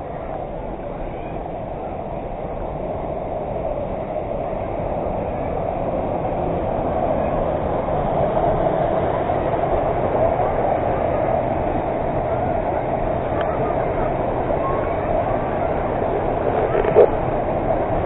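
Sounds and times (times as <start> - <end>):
waterfall roaring: 5.1 - 18.0.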